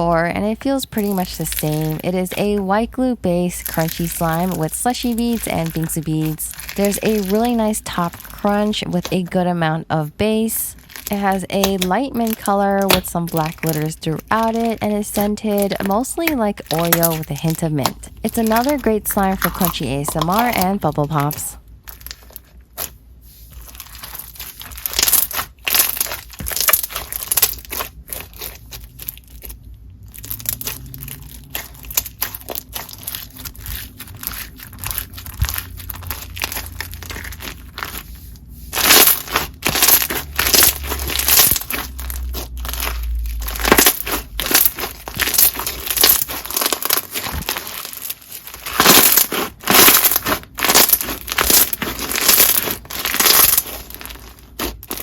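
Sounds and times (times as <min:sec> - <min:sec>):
crunchy slime squeezed by hand: 0:23.6 - 0:38.1, 0:38.7 - 0:55.0.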